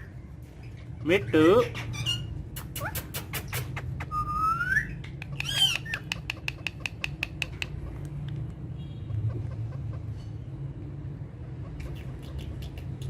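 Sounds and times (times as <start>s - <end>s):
parrot harsh squawk: 4.0s - 6.2s
parrot rising whistle: 4.1s - 6.0s.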